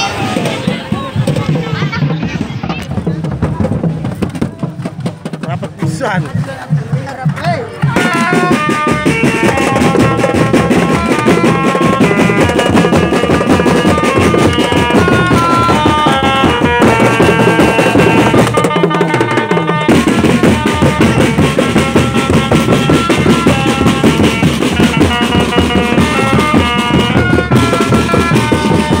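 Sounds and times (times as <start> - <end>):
drums beating: 0.0 - 29.0
melody of held notes: 8.0 - 29.0.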